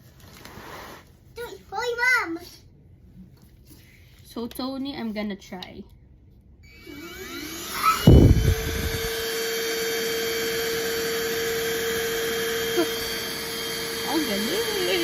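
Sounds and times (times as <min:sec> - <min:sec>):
stick vacuum running: 0:06.6 - 0:15.0.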